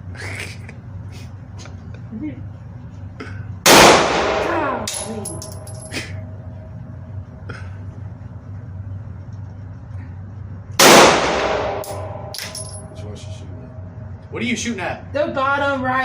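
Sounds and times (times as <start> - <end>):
loud gunshot: 3.7 - 4.8, 10.8 - 11.9
light metallic clinks: 4.9 - 6.2, 11.8 - 13.0.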